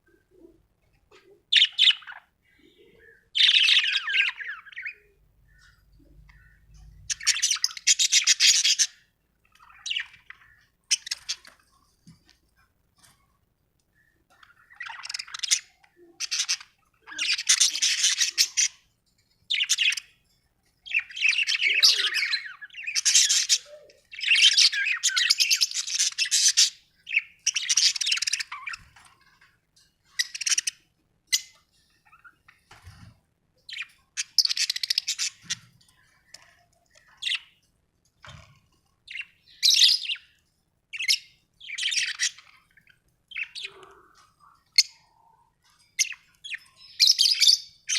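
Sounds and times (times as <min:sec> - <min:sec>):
budgerigars chirping: 0:01.5 - 0:11.6, 0:14.5 - 0:18.8, 0:19.5 - 0:20.1, 0:20.8 - 0:28.8, 0:30.1 - 0:32.4, 0:33.7 - 0:35.7, 0:39.1 - 0:45.2, 0:46.0 - 0:47.9.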